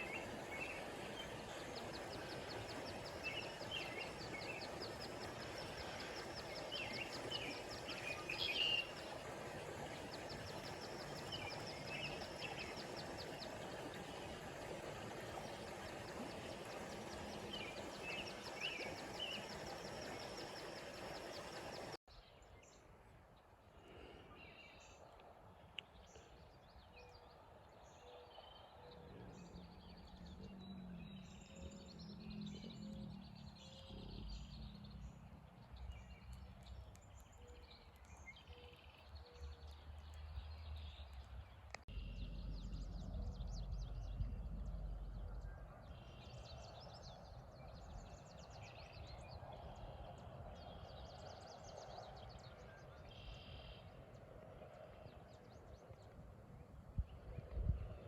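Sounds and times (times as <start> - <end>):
small birds chirping: 0.0 - 22.0
low background rumble: 41.8 - 48.6.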